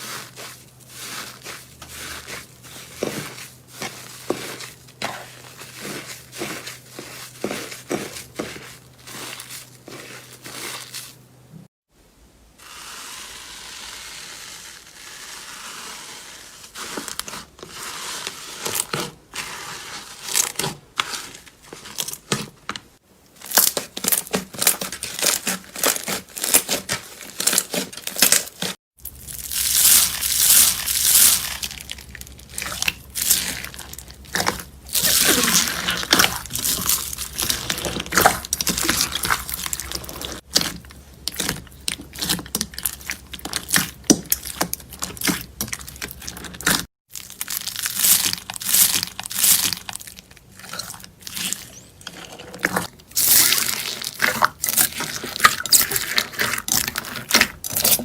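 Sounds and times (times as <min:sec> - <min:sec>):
slime crackling and popping: 0:29.0 - 0:51.8.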